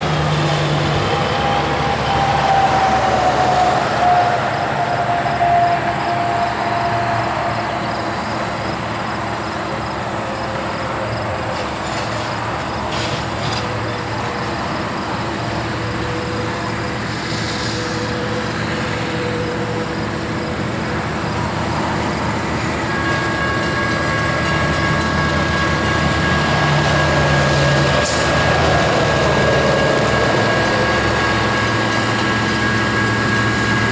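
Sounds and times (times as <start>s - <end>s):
diesel locomotives droning: 0.0s - 33.9s
higher steady tones: 14.7s - 33.9s.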